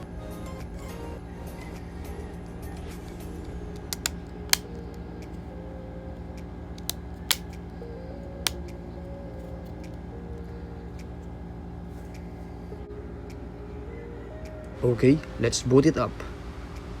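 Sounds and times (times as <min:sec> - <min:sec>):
background music: 0:00.0 - 0:17.0
sharp plastic clicks: 0:04.0 - 0:04.7, 0:06.8 - 0:07.5.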